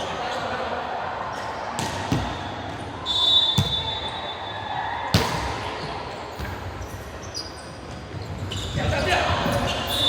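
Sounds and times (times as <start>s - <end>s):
basketball bouncing on gym floor: 1.8s - 2.4s, 3.6s - 3.8s.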